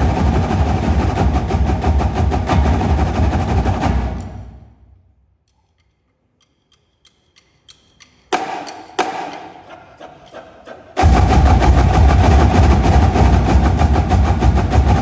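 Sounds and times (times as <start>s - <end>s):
marching drumline playing: 0.0s - 4.9s, 11.0s - 15.0s
accented drum hits: 0.0s - 5.0s, 11.0s - 15.0s.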